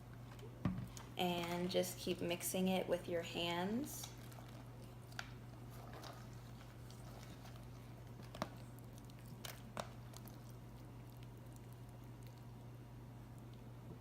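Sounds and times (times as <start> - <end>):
steady low hum: 0.0 - 14.0
slime squishing: 3.8 - 13.7.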